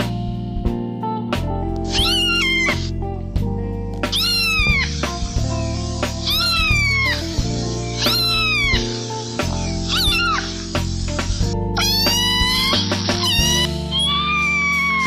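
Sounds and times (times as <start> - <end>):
background music: 0.0 - 15.0
cat meowing: 1.9 - 2.9, 4.1 - 9.0, 9.6 - 10.7, 11.8 - 15.0.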